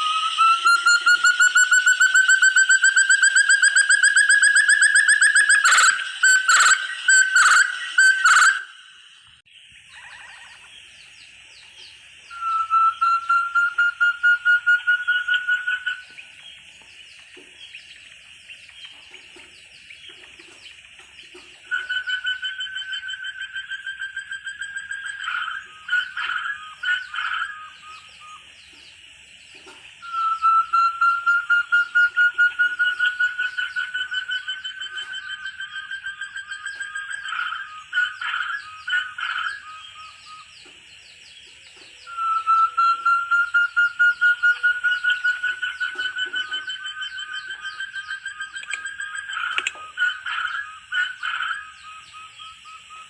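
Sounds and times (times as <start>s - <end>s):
partridge whistled trill: 0.0s - 9.3s, 12.3s - 16.2s, 21.6s - 28.5s, 30.0s - 40.7s, 41.8s - 53.0s.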